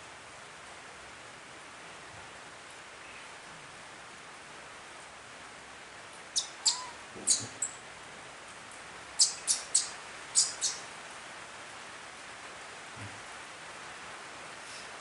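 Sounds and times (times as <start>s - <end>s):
steady hiss: 0.0s - 15.0s
baby monkey squeaking: 6.4s - 7.8s, 9.2s - 10.8s.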